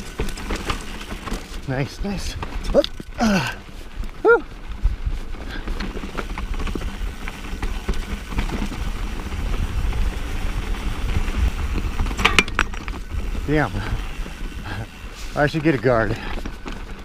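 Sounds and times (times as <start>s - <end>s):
bike rattling: 0.0s - 17.0s
tyres crunching over dirt and rocks: 0.0s - 17.0s
wind rumbling on microphone: 0.0s - 17.0s
rider whooping: 3.2s - 4.6s.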